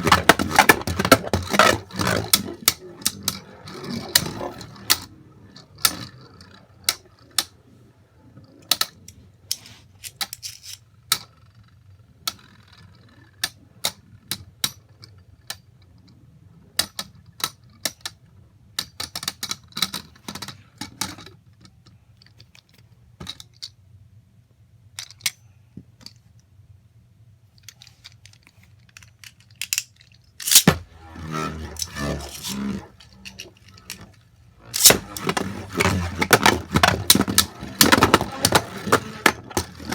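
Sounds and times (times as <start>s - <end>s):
plastic clattering: 0.0s - 5.0s, 28.9s - 39.9s
plastic parts clicking: 8.6s - 10.8s, 27.6s - 30.8s, 31.6s - 39.9s.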